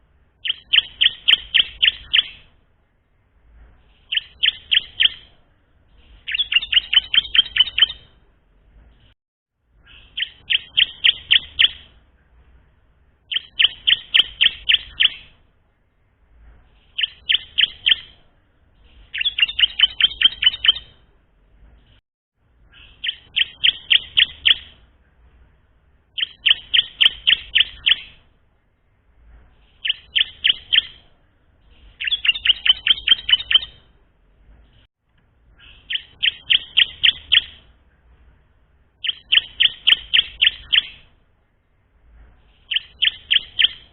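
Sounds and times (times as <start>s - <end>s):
bird chipping notes: 0.4s - 2.5s, 3.9s - 5.3s, 6.2s - 8.1s, 9.8s - 12.0s, 13.2s - 15.4s, 17.0s - 18.2s, 18.8s - 20.9s, 22.7s - 24.8s, 26.2s - 28.2s, 29.6s - 31.0s, 31.7s - 33.9s, 35.6s - 37.7s, 39.0s - 41.1s, 42.5s - 43.9s.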